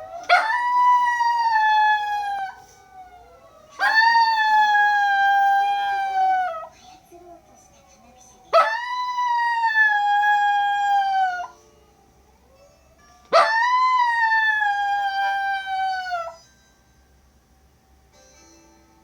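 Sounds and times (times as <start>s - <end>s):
fire engine siren: 0.0s - 6.7s
dog howling: 0.0s - 7.4s, 8.4s - 11.6s, 13.3s - 16.4s.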